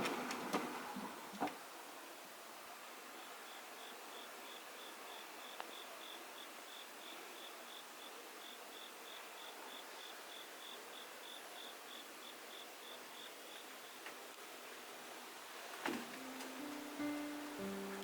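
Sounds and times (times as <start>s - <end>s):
cricket chirping: 3.2s - 14.0s.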